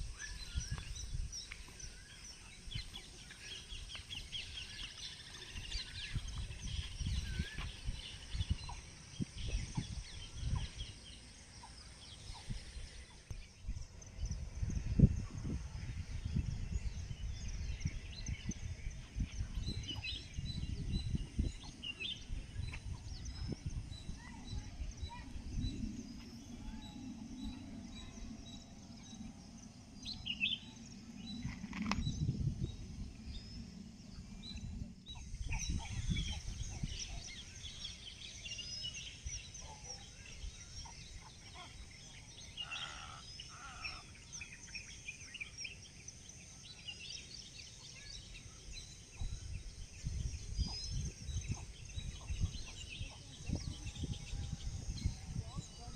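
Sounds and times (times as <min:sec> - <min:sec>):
wind gusts on microphone: 0:00.0 - 0:45.8, 0:46.9 - 0:55.9
small birds chirping: 0:00.0 - 0:55.9.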